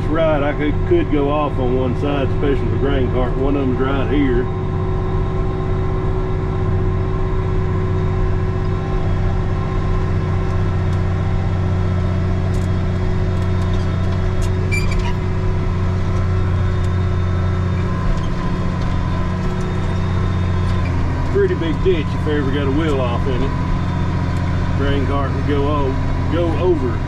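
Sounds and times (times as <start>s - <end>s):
tractor diesel engine drone: 0.0s - 27.0s.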